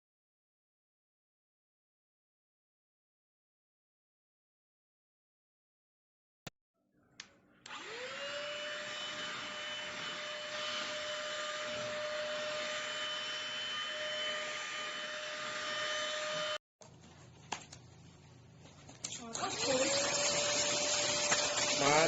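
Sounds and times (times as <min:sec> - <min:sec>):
handheld vacuum cleaner whine: 0:07.7 - 0:16.6, 0:19.3 - 0:22.0.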